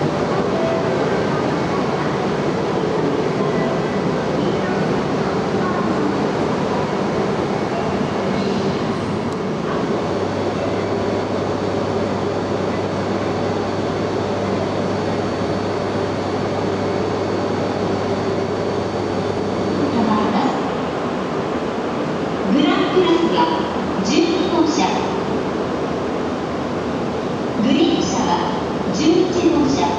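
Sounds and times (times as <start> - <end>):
train electrical hum: 0.0 - 29.9.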